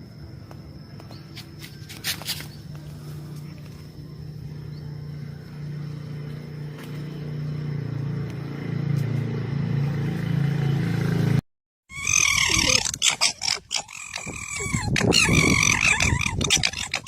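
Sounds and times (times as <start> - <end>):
low motor hum: 2.5 - 11.4.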